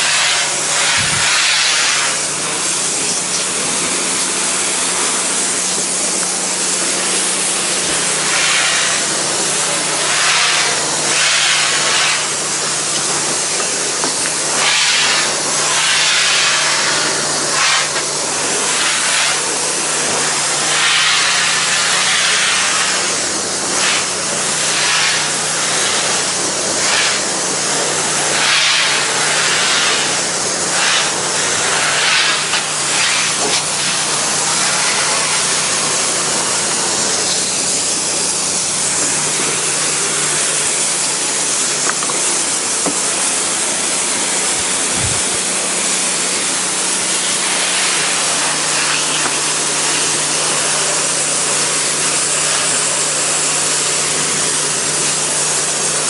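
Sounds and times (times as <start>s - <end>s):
pressure washer spray hiss: 0.0s - 56.0s.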